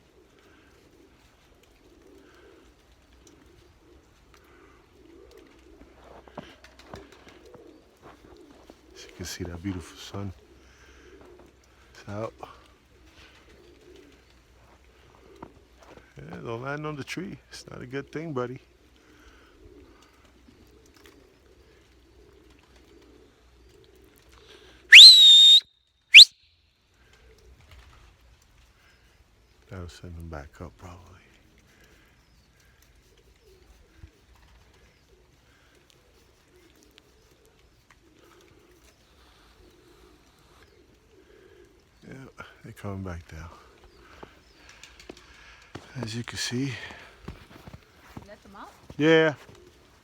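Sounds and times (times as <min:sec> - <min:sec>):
pigeons cooing: 0:00.0 - 0:25.0, 0:26.9 - 0:29.7, 0:31.0 - 0:50.0
loud sharp whistles: 0:24.9 - 0:26.5.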